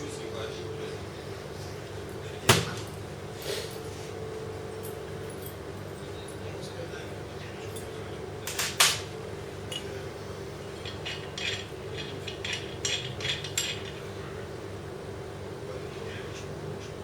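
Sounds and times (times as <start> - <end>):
steady low hum: 0.0 - 17.0
metal parts clinking: 10.8 - 14.1.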